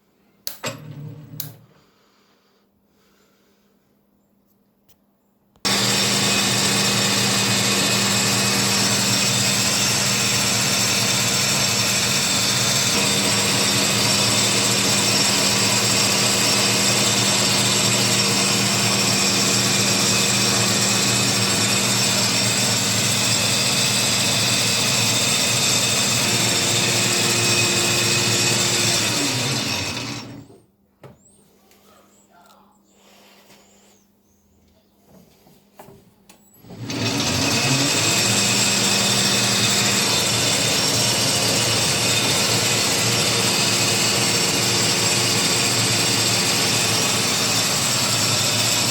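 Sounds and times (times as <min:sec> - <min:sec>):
lathe motor humming and whining: 0:05.7 - 0:30.5, 0:36.7 - 0:48.9
lathe motor spinning down: 0:05.7 - 0:30.6, 0:36.6 - 0:48.9.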